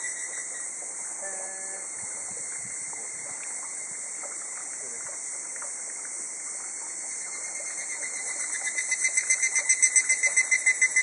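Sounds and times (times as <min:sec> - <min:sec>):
cicada calling in pulses: 0:00.0 - 0:11.0
steady high-pitched hiss: 0:00.0 - 0:11.0.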